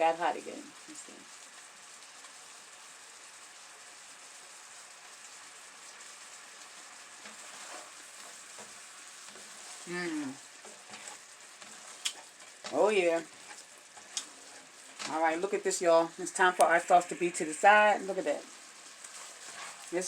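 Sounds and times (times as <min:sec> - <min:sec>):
syrup sizzling in a pan: 0:00.0 - 0:20.0
person humming: 0:09.9 - 0:10.4.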